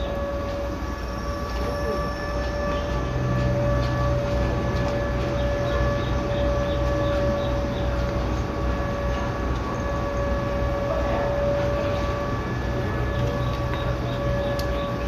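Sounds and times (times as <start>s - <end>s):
electric train equipment whine: 0.0s - 15.0s
low pulsing rumble: 0.0s - 15.0s.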